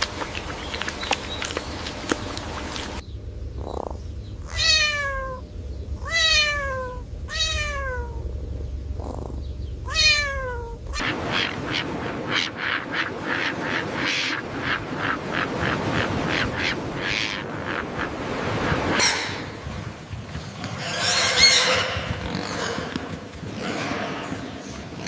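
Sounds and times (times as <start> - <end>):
cat meowing: 4.4 - 5.4, 6.0 - 8.2, 9.1 - 11.0.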